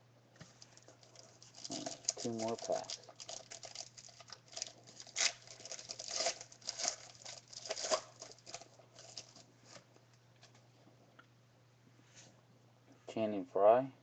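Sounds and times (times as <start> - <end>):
wrapper tearing and crinkling: 0.6 - 9.8.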